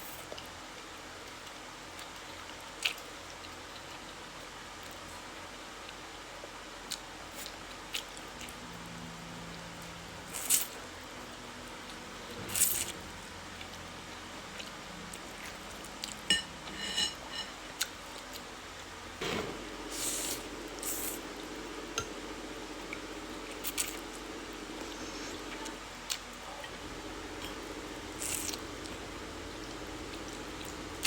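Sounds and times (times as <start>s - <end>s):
wet chewing and mouth noises: 0.3s - 5.0s.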